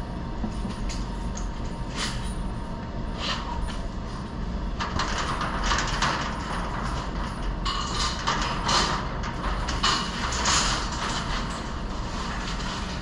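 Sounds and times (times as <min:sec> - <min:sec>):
chain rattling inside metal rail: 0:04.8 - 0:13.0.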